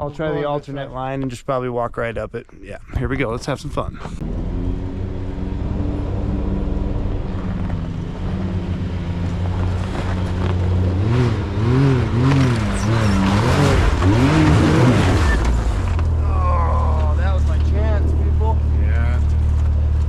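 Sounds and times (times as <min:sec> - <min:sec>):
engine revving under load: 0:04.1 - 0:20.0
tires scrabbling on ice: 0:07.0 - 0:20.0.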